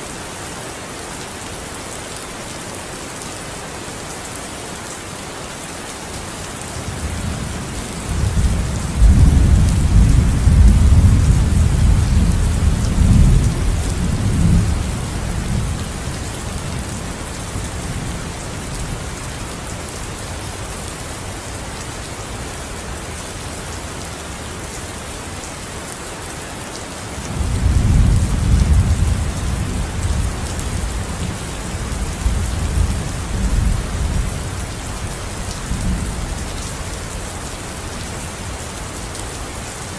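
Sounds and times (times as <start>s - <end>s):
heavy rain: 0.0s - 39.9s
rolling thunder: 8.1s - 15.8s.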